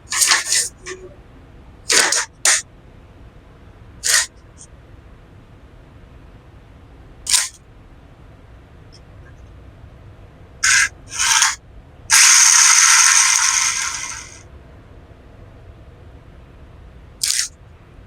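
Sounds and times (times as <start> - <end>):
hard plastic scraping: 0.1 - 1.2, 1.9 - 2.6.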